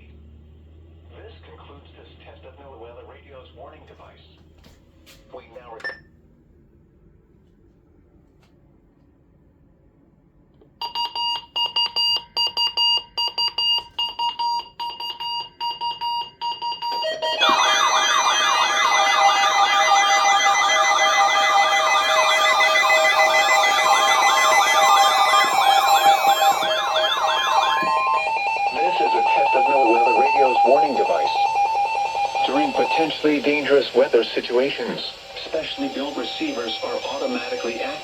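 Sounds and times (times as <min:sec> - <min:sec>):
wailing siren tones: 0:17.0 - 0:38.0
rapid high beeping: 0:17.1 - 0:38.0
steady electronic tones: 0:17.3 - 0:38.0.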